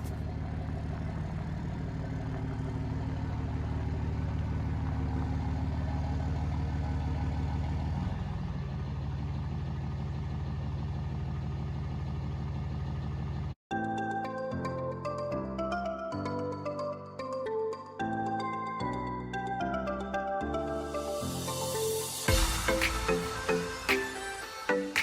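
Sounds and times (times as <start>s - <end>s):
diesel engine idling: 0.0s - 13.6s.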